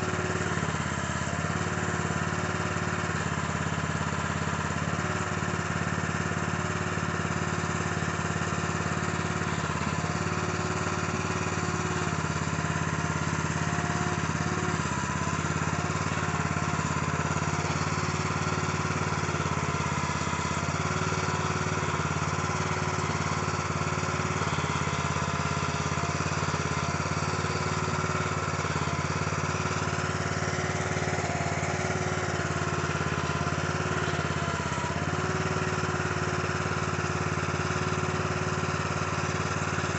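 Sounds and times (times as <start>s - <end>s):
small gasoline engine running: 0.0s - 39.9s.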